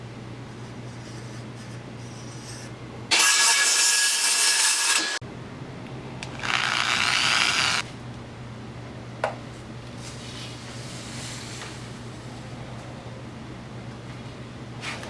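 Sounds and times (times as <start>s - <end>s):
steady low hum: 0.0s - 3.1s, 5.2s - 15.0s
power tool running: 6.2s - 7.8s.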